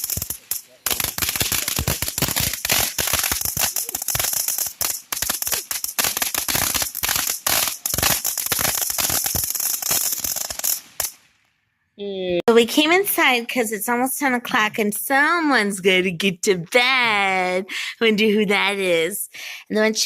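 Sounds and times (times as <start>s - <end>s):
fireworks cracking and popping: 0.0s - 11.5s.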